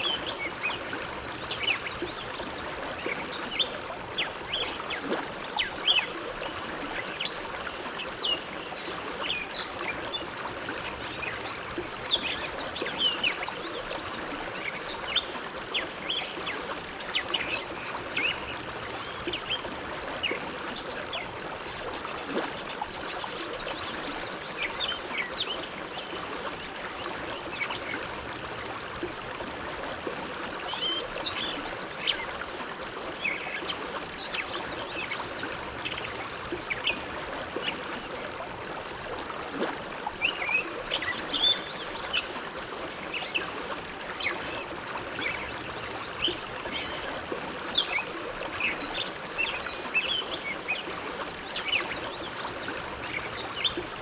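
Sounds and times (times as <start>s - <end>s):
river flowing: 0.0s - 54.0s
water gurgles and splashes: 0.0s - 54.0s.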